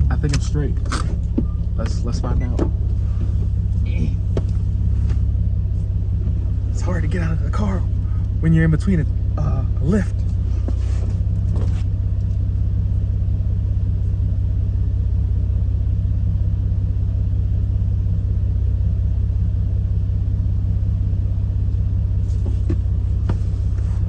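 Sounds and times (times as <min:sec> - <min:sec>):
car engine idling: 0:00.0 - 0:24.0.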